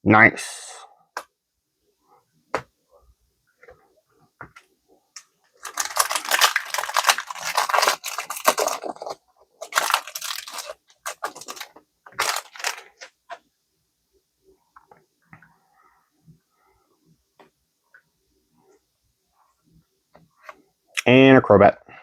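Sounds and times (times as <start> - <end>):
foil pack tearing and crinkling: 5.6 - 13.0.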